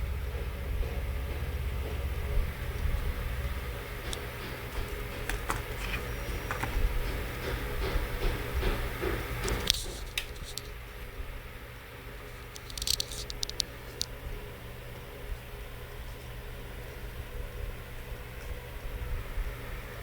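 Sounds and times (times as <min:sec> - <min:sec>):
steady low hum: 0:00.0 - 0:20.0
hands handling small parts: 0:04.7 - 0:07.3, 0:12.4 - 0:14.1
sharp ticks: 0:12.5 - 0:14.1.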